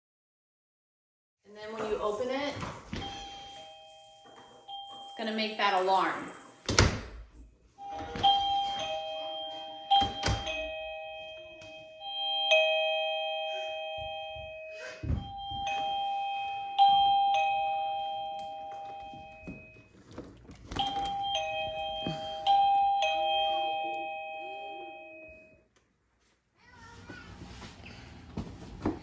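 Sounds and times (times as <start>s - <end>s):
two-note door chime: 2.6s - 6.8s, 7.8s - 19.9s, 20.8s - 25.6s.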